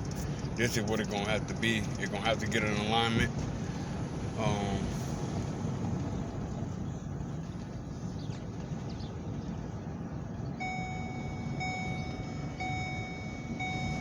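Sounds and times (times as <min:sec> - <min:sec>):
car rolling low rumble: 0:00.0 - 0:14.0
seatbelt warning chime: 0:10.6 - 0:14.0.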